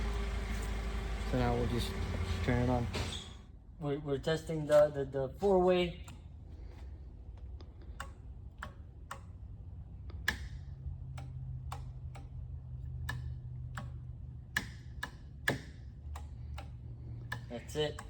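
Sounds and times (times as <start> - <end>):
low steady hum: 0.0 - 18.0
light switches clicking: 8.0 - 9.4, 10.1 - 18.0.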